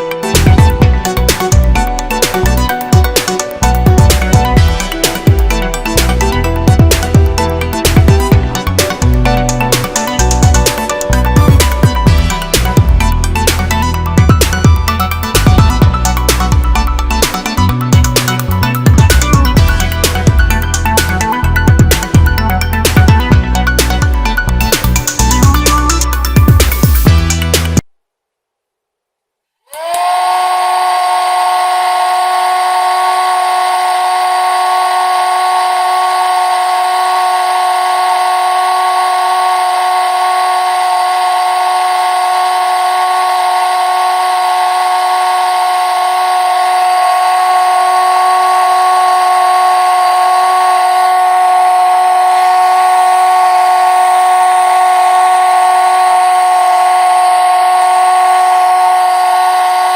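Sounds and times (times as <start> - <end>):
electric fan motor whining: 30.0 - 59.9.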